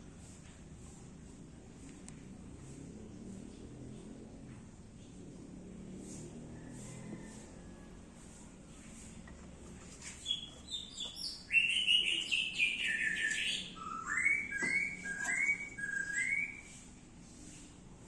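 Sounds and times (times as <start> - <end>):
songbird singing: 10.2 - 16.8.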